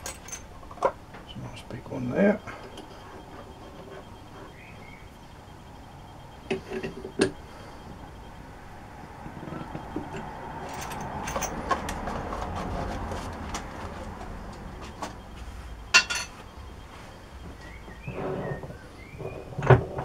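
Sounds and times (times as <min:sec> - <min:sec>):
sharp metal clinks: 0:10.1 - 0:11.6, 0:15.9 - 0:16.4.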